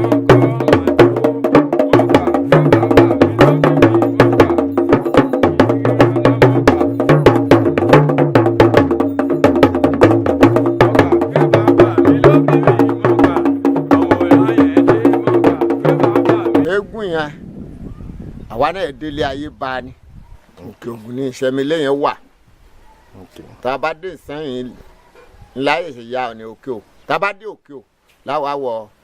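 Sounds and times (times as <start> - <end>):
wood-block percussion: 0.0 - 16.7
stepping bass line: 0.0 - 16.8.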